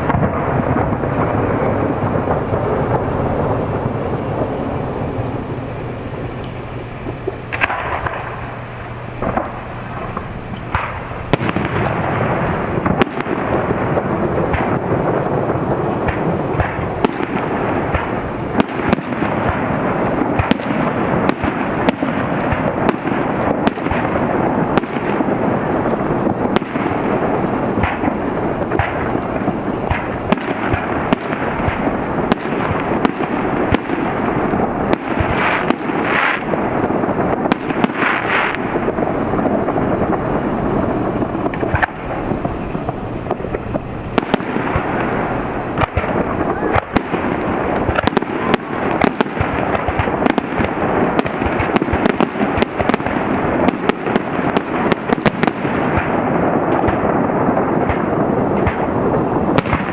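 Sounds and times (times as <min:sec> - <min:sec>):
fireworks bangs and crackle: 0:00.0 - 0:59.9.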